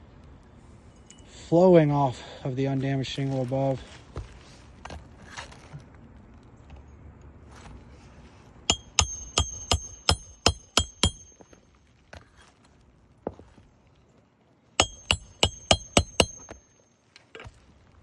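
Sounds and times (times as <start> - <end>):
hammer striking nail: 8.7 - 11.4, 14.8 - 16.6.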